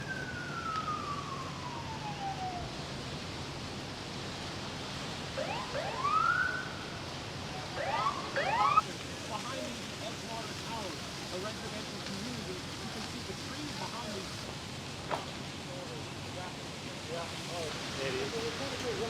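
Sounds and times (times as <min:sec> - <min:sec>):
emergency vehicle siren: 0:00.0 - 0:08.8
background noise: 0:00.0 - 0:19.0.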